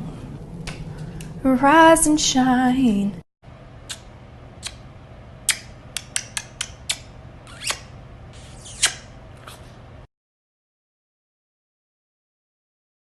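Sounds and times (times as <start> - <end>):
low steady hum: 0.0 - 10.1
small animal high chirps: 6.8 - 9.1.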